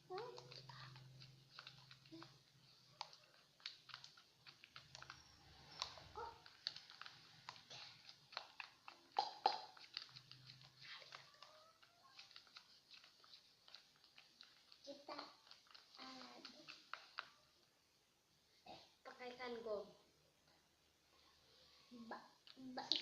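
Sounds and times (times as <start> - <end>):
slime squelching and clicking: 0.0 - 17.4, 22.3 - 23.0
slime popping: 2.9 - 17.4.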